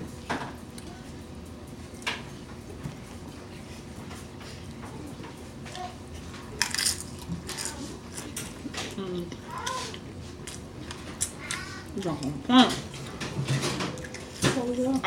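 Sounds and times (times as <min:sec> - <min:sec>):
crunching tortilla chips: 0:06.6 - 0:08.4
chewing: 0:09.3 - 0:13.2.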